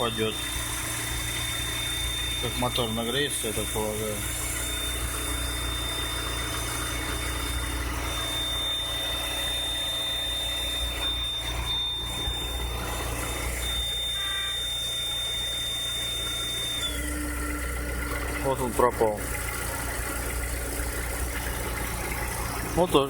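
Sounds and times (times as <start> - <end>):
high-pitched whistle from engine: 0.0 - 17.8
car engine idling: 0.0 - 23.0.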